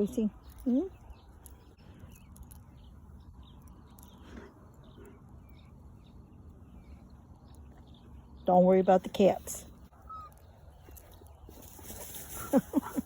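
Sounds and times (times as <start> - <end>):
high-pitched bird chirps: 10.0 - 11.2.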